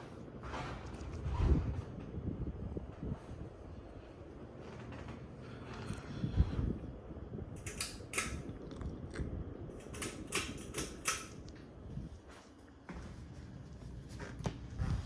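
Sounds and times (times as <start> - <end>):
ceiling fan rumble: 0.0 - 15.0
sharp clicks and rattles: 7.6 - 8.8, 9.8 - 11.5.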